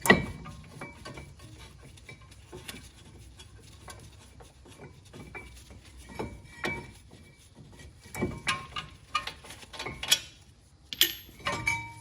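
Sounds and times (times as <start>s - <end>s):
metallic clinks and knocks: 10.9s - 12.0s.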